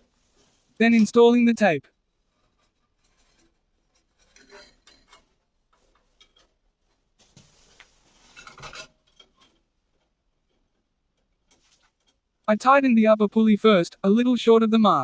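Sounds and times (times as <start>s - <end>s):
faint metallic clinks and rubbing: 1.9s - 12.4s.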